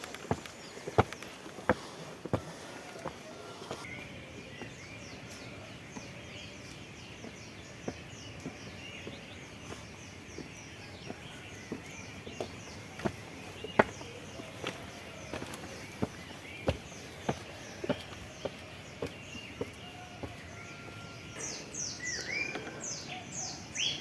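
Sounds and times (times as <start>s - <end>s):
footsteps on a trail: 0.0s - 22.4s
birds calling and chirping: 0.0s - 24.0s.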